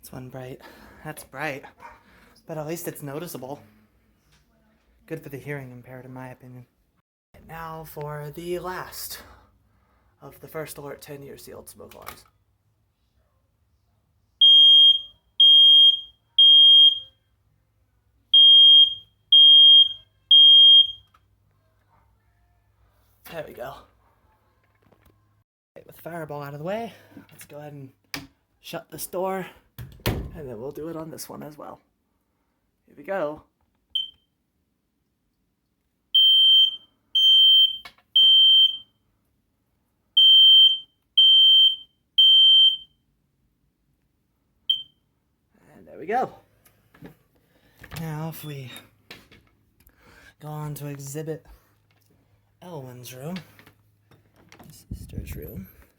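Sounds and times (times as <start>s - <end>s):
smoke alarm beeping: 14.4s - 17.2s, 18.3s - 21.2s, 34.0s - 34.3s, 36.2s - 39.0s, 40.2s - 43.0s, 44.7s - 45.1s.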